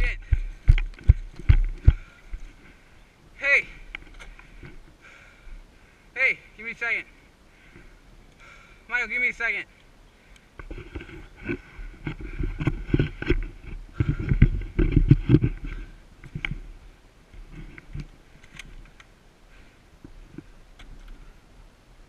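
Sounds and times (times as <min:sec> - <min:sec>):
microphone handling knocks: 0:00.2 - 0:02.1.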